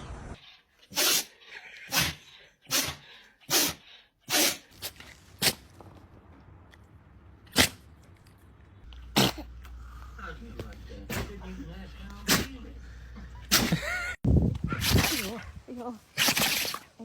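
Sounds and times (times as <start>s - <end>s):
dog sneezing: 0.9s - 1.3s, 1.9s - 5.7s, 7.5s - 7.8s, 9.1s - 9.5s, 12.2s - 12.6s, 13.5s - 13.9s, 16.2s - 16.9s.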